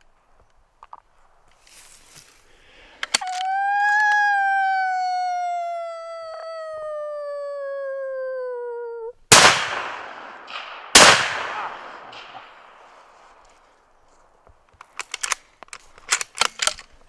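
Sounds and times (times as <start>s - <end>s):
howl falling in pitch: 3.2s - 9.2s
rifle shots with echoes: 9.3s - 13.4s.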